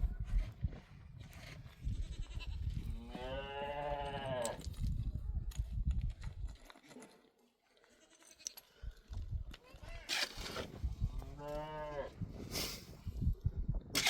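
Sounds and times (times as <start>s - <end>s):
farm animal bleating: 1.8s - 4.6s.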